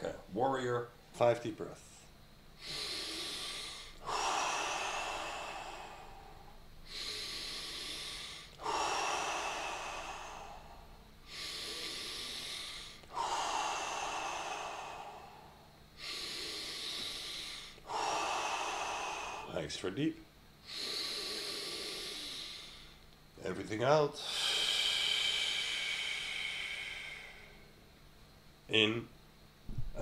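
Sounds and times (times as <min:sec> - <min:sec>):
man breathing deeply: 0:02.2 - 0:19.8, 0:20.6 - 0:23.2, 0:24.2 - 0:27.8.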